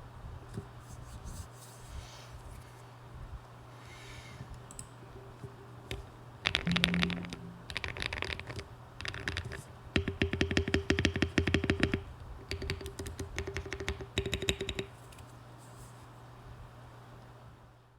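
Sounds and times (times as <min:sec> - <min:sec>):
mechanical keyboard typing: 0:06.5 - 0:14.9.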